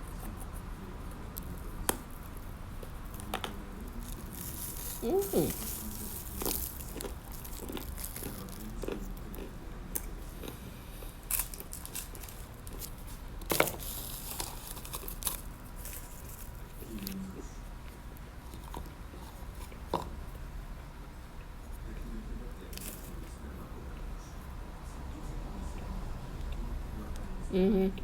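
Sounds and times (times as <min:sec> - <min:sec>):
person chewing: 0:01.4 - 0:17.2
person crunching food: 0:01.4 - 0:17.3.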